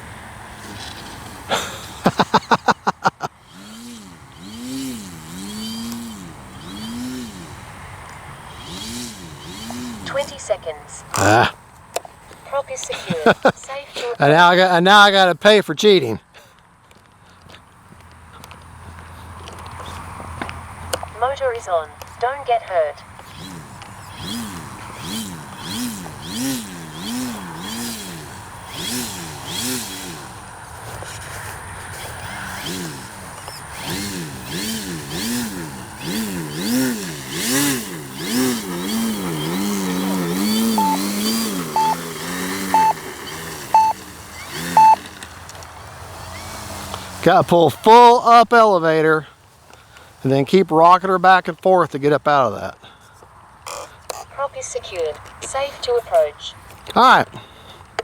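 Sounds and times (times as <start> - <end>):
electric motor and propeller whine: 0.0 - 11.3, 23.0 - 48.0.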